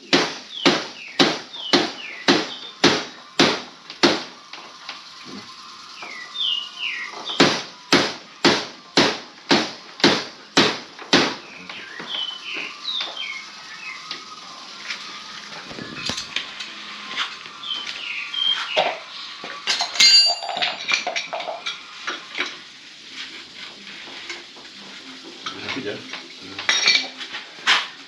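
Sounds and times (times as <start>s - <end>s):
birds chirping: 0.0s - 3.4s, 4.4s - 7.9s, 11.2s - 21.7s
hammer strikes: 0.0s - 4.4s, 7.3s - 11.5s.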